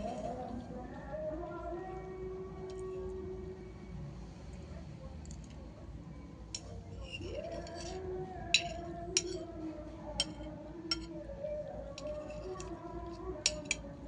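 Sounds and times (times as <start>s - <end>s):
cutlery clinking against a plate: 6.5s - 11.3s, 11.9s - 14.0s.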